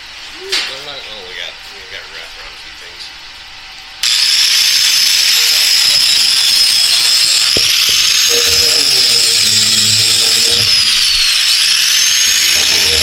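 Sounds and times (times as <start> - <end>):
electric grinder on steel: 4.0 - 13.0
sharp clicks: 4.0 - 13.0.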